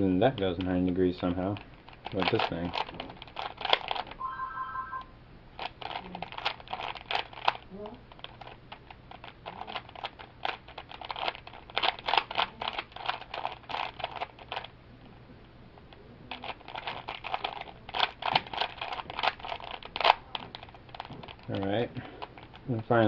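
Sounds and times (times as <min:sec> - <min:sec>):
puzzle cube layers clicking: 0:09.2 - 0:14.7.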